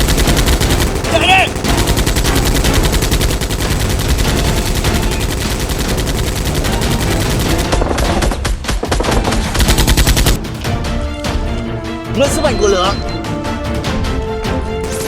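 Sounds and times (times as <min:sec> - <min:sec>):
rapid automatic gunfire: 0:00.0 - 0:10.4.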